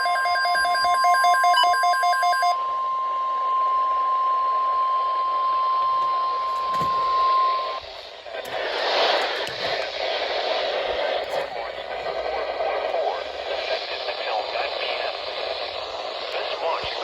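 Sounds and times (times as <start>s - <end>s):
steady warning alarm tone: 0.0s - 7.9s
radio hiss: 4.6s - 17.0s.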